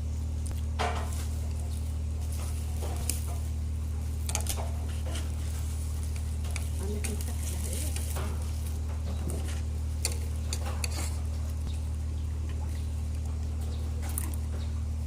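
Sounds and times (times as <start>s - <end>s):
steady low hum: 0.0s - 15.0s
utensils clicking against dishes: 6.1s - 11.2s.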